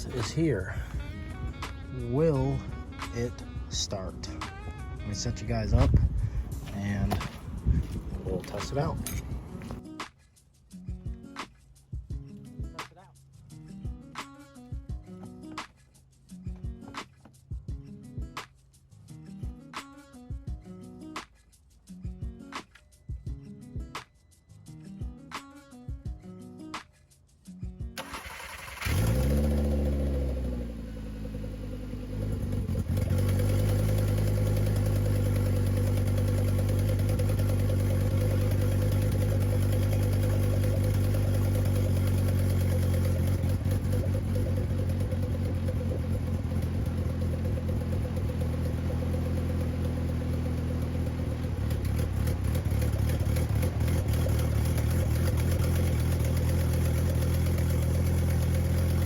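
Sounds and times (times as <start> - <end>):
car engine starting and idling: 0.0 - 9.8, 28.0 - 59.0.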